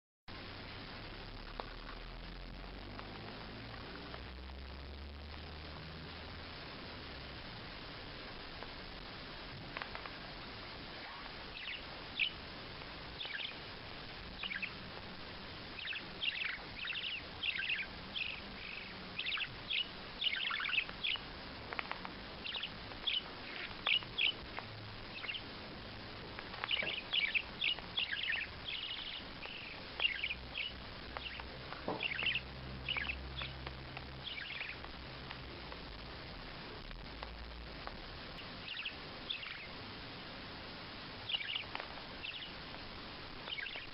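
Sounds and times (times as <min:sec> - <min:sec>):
bird chirping: 0:09.8 - 0:35.6, 0:38.3 - 0:39.8, 0:41.2 - 0:43.9.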